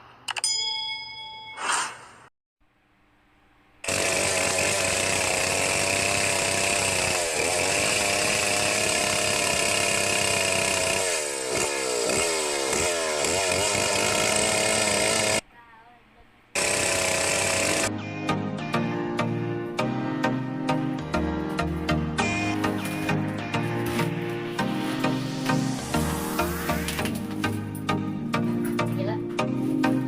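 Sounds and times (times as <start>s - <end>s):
chainsaw running at high speed: 3.8s - 15.4s, 16.6s - 17.9s, 25.0s - 27.0s.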